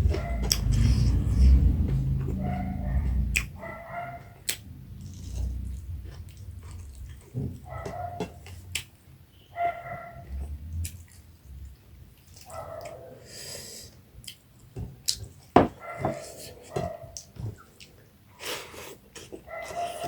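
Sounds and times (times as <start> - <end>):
chewing clicks and smacks: 4.2 - 8.9, 14.2 - 15.3.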